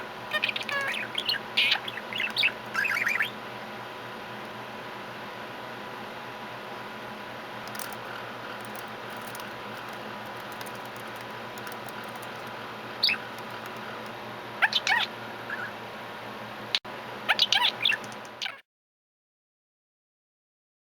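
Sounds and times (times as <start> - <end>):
steady background hum: 0.0 - 18.6
budgerigar chirping: 0.3 - 3.4, 13.0 - 13.3, 14.6 - 15.8, 17.3 - 18.6.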